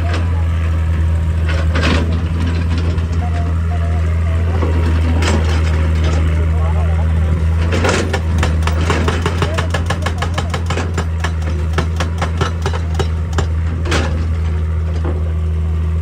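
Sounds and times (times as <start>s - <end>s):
excavator diesel engine droning: 0.0s - 16.0s
rapid sharp knocks: 7.8s - 13.6s.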